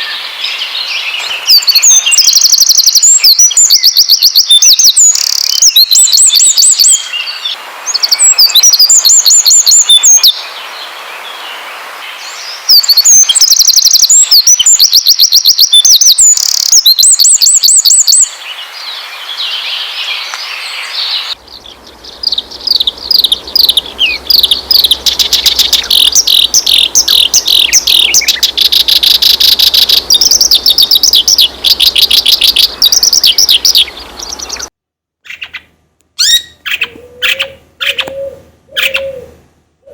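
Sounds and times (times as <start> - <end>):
songbirds chirping and trilling: 0.0 - 39.9
faint low hum: 21.3 - 34.7.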